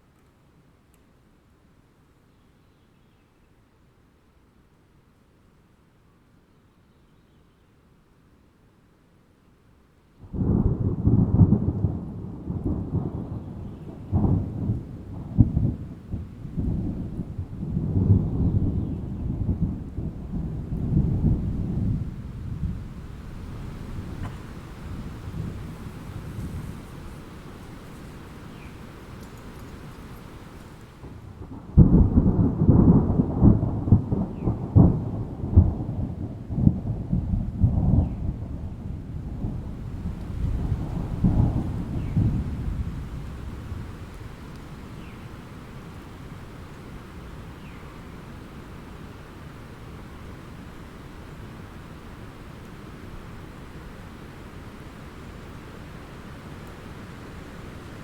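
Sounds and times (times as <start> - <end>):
rain: 7.8 - 58.0
thunder crack and rumble: 10.2 - 28.0, 31.0 - 45.2.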